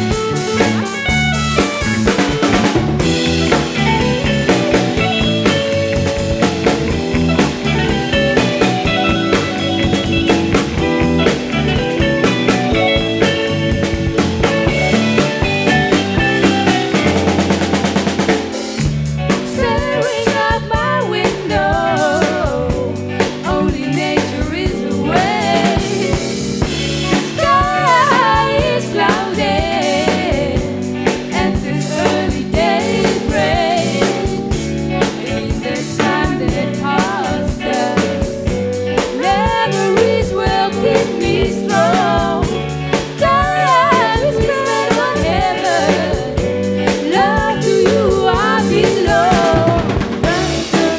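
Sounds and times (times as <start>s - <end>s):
rock band playing live: 0.0s - 50.9s
person singing: 19.5s - 26.4s, 27.0s - 50.9s.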